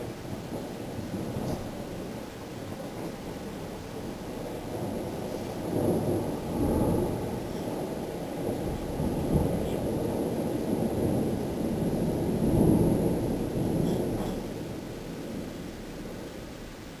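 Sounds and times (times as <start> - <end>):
storm wind gusting: 0.0 - 17.0.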